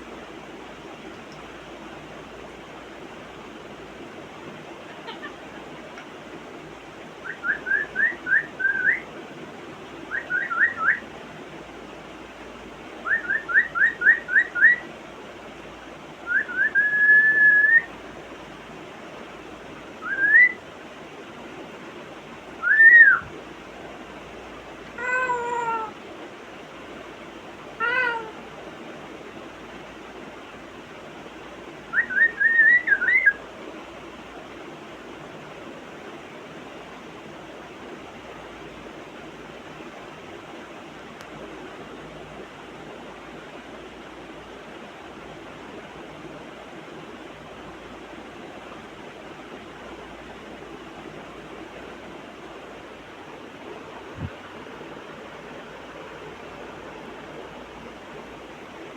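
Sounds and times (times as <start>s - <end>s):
steady hiss: 0.0s - 58.9s
parrot whistling: 7.2s - 9.0s, 10.1s - 11.0s, 13.1s - 14.8s, 16.3s - 17.9s, 20.0s - 20.6s, 22.6s - 23.3s, 31.9s - 33.4s.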